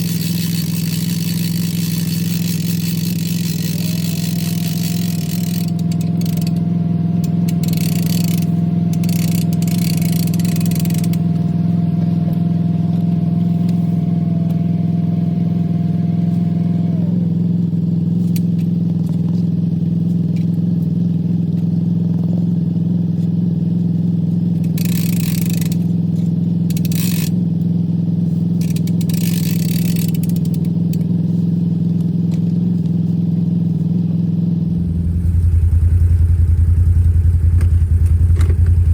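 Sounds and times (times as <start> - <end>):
thin whine: 0.0 - 17.3, 28.3 - 38.9
atv engine running: 0.0 - 38.9.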